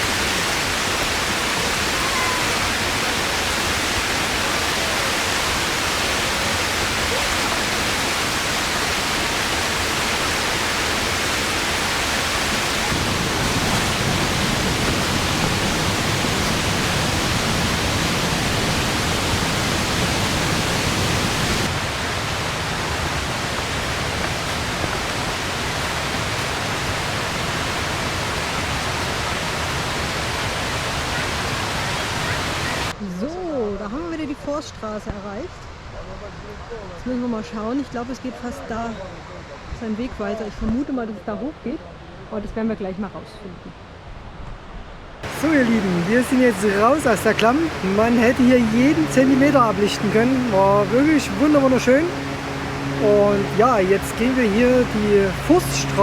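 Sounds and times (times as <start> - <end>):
mountain stream rushing over falls: 0.0 - 33.0, 45.1 - 56.0.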